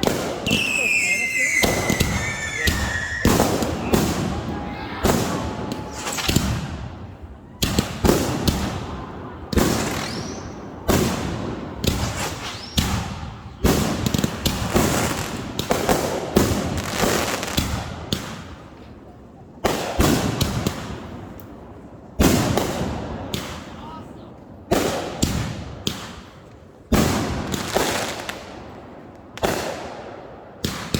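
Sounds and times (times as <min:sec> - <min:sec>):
fireworks bangs: 0:00.0 - 0:18.8, 0:19.5 - 0:21.3, 0:22.1 - 0:23.8, 0:24.6 - 0:30.9
firework rising whistle: 0:00.4 - 0:04.0, 0:04.6 - 0:06.4.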